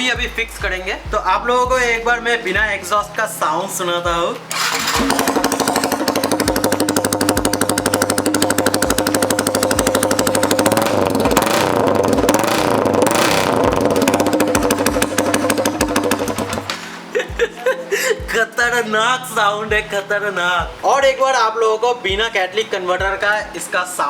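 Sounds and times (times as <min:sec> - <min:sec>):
motorcycle engine harsh popping: 0:04.1 - 0:17.0.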